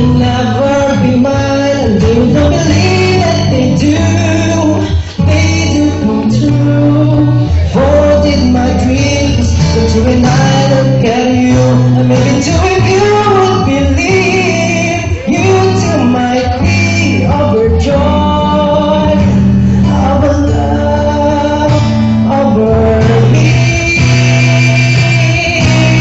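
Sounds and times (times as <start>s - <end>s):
singing voices: 0.0s - 26.0s
steady bass notes: 0.0s - 26.0s.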